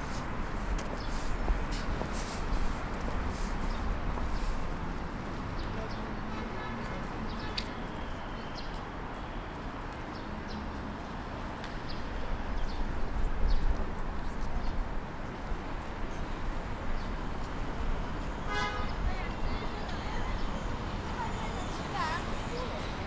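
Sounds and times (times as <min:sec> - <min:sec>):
traffic: 0:00.0 - 0:23.0
crowd noise: 0:14.2 - 0:23.0.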